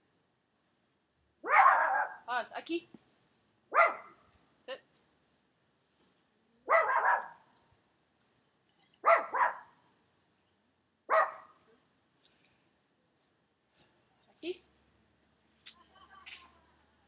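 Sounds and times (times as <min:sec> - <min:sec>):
dog barking: 0:01.4 - 0:02.3, 0:03.7 - 0:04.2, 0:06.7 - 0:07.4, 0:09.0 - 0:09.7, 0:11.1 - 0:11.6.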